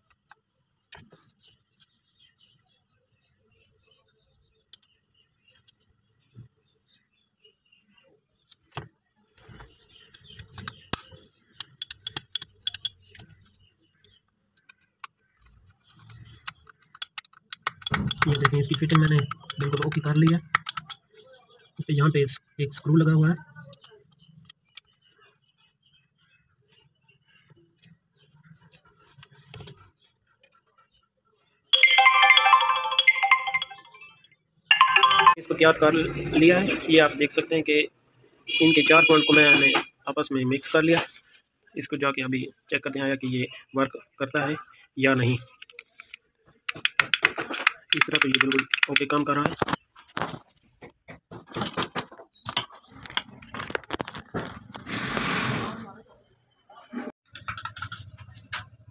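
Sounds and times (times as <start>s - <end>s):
hard parts clicking and rattling: 10.0s - 13.5s, 14.6s - 21.3s, 46.7s - 49.8s, 57.2s - 58.7s.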